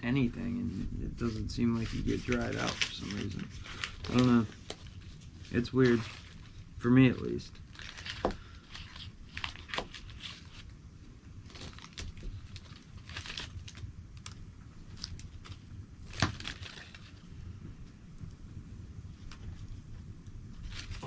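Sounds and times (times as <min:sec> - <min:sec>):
crinkling: 0:00.2 - 0:21.0.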